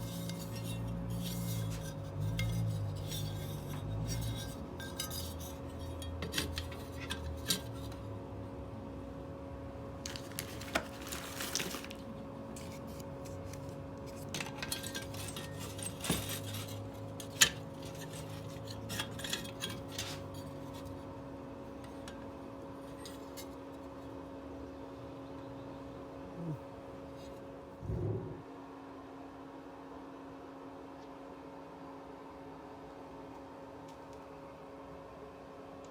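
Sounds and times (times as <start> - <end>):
metal parts and tools clinking: 0.0 - 8.0, 14.1 - 20.8
steady low hum: 0.0 - 10.8, 11.7 - 29.1.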